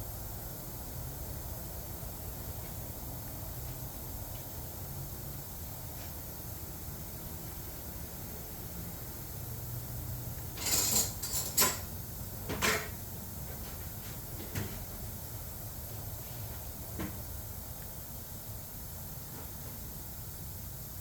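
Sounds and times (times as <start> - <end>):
tools clattering and knocking: 10.6 - 11.9.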